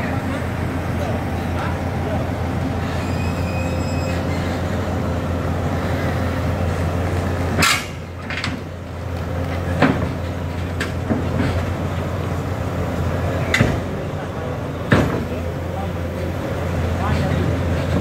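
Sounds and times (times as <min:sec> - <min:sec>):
excavator diesel engine running: 0:00.0 - 0:18.0.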